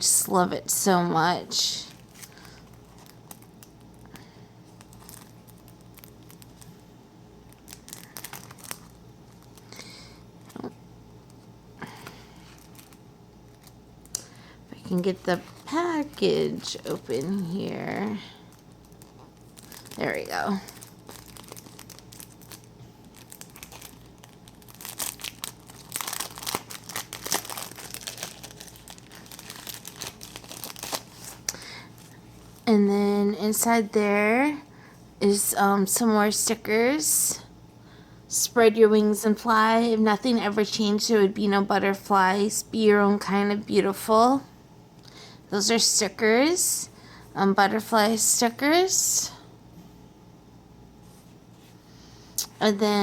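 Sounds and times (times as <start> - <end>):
packaging crinkling and rustling: 1.5 - 10.7, 11.3 - 32.7.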